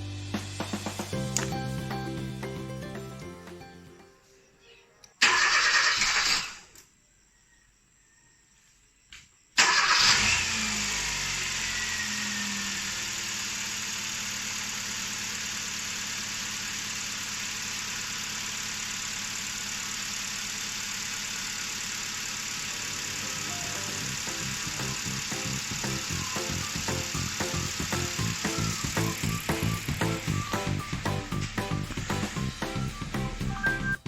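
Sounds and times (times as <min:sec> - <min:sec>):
car engine starting and idling: 0:05.2 - 0:06.4, 0:09.6 - 0:34.0.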